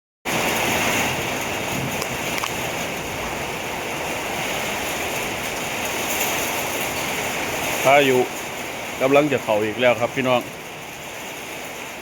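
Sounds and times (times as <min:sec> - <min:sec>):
strong gusty wind: 0:00.3 - 0:12.0.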